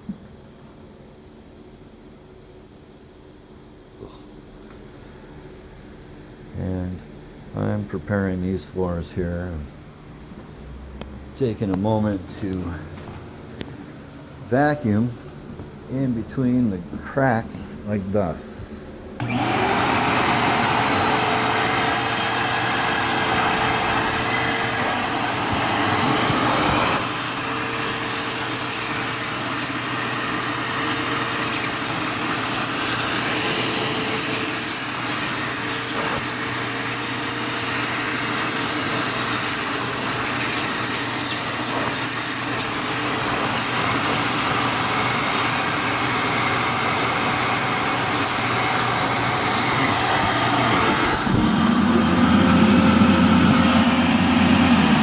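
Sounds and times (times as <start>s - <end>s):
vacuum cleaner running: 19.1s - 55.0s.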